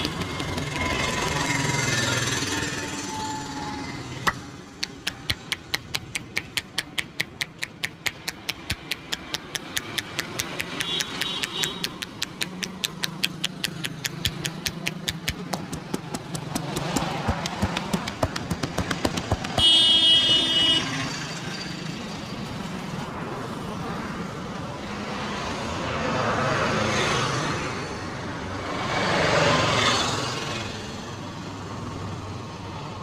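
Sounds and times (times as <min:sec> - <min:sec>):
hands tapping on head: 0:00.0 - 0:01.4, 0:04.3 - 0:19.8
street traffic hum: 0:00.0 - 0:33.0
sharp click: 0:04.2 - 0:19.6.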